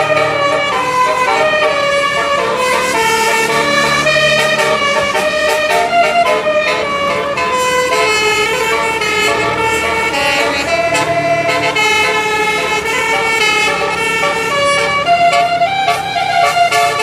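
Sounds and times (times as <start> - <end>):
bus air horn playing a tune: 0.0 - 17.0.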